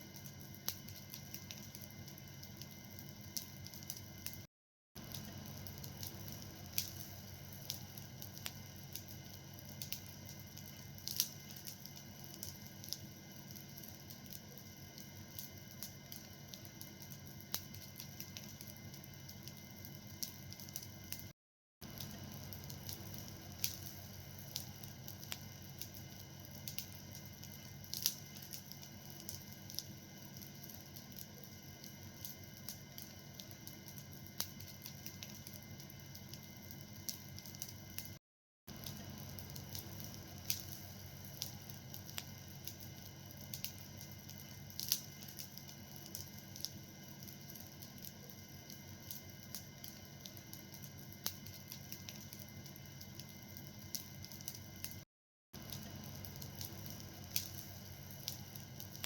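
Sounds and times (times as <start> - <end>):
fire hissing: 0.0 - 4.4, 5.0 - 21.2, 21.8 - 55.0, 55.6 - 59.0
fire crackling and popping: 0.0 - 55.0, 55.6 - 59.0.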